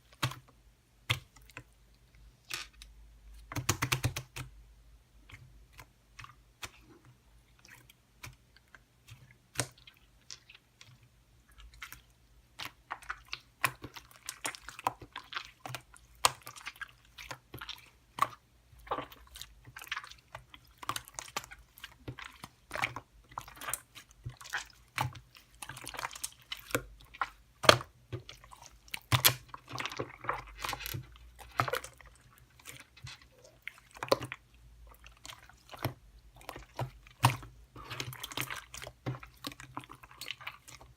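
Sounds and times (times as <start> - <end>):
crunching and crackling: 5.3 - 40.9.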